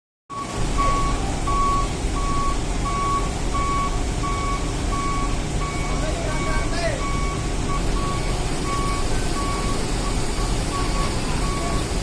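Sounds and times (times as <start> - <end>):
low engine rumble: 0.3 - 12.0
vehicle reversing alarm beeping: 0.3 - 12.0.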